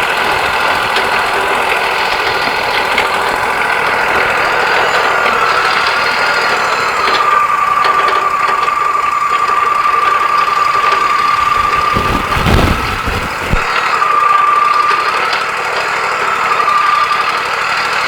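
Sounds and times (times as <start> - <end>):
sawmill engine whining: 0.0 - 18.0
short low rumble: 11.2 - 13.7.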